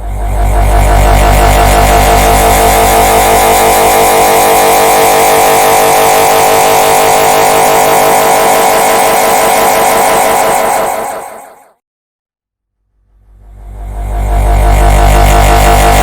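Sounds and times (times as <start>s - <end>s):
dense buzzing drone of laughter: 0.0s - 11.3s.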